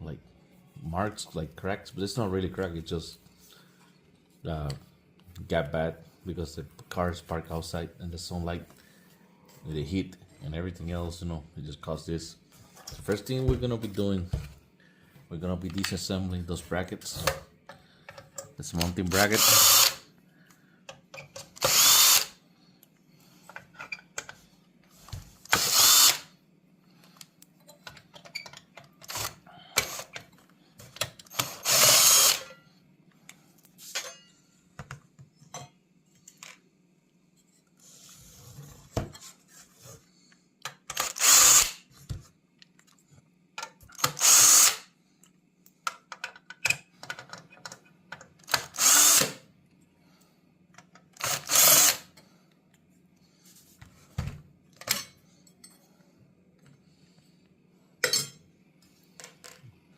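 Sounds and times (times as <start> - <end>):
clicks and knocks of handling parts: 17.2 - 19.0, 22.8 - 25.3, 27.0 - 31.5, 40.6 - 41.2, 42.0 - 44.2, 45.2 - 48.8, 50.7 - 51.3
power drill-driver bursts: 19.1 - 20.0, 21.6 - 22.4, 25.5 - 26.3, 29.1 - 30.1, 31.3 - 32.5, 40.9 - 41.8, 44.0 - 44.9, 48.5 - 49.4, 51.2 - 52.1.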